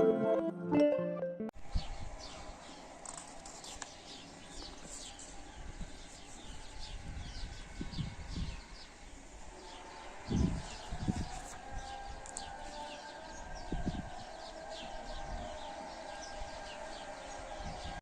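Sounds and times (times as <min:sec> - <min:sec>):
background music: 0:00.0 - 0:01.6
small birds chirping: 0:01.7 - 0:18.0.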